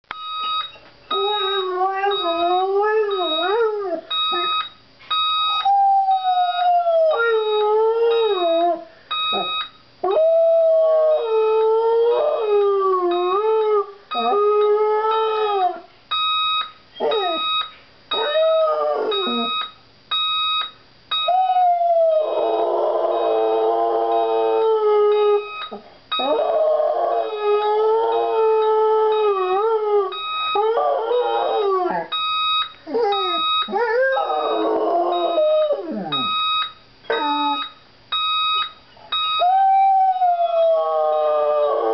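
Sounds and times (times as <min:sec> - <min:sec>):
alarm clock beeping: 0:00.1 - 0:05.6, 0:09.1 - 0:09.8, 0:16.1 - 0:18.3, 0:19.1 - 0:21.3, 0:25.1 - 0:26.2, 0:30.1 - 0:30.6, 0:32.1 - 0:36.8, 0:37.4 - 0:39.4
dog howling: 0:26.2 - 0:32.1, 0:32.9 - 0:36.3, 0:37.1 - 0:37.6, 0:39.5 - 0:41.9.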